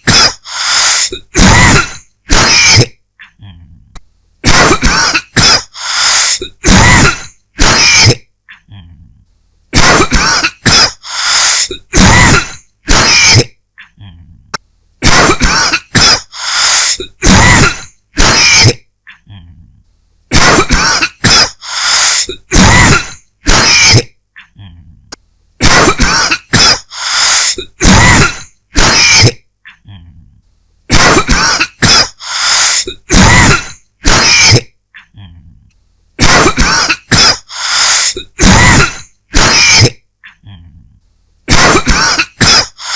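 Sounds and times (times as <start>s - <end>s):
person dry coughing: 0.0s - 3.0s, 4.4s - 8.6s, 9.8s - 13.6s, 15.0s - 18.8s, 20.3s - 24.2s, 25.6s - 29.5s, 30.9s - 34.8s, 36.2s - 40.0s, 41.5s - 42.9s.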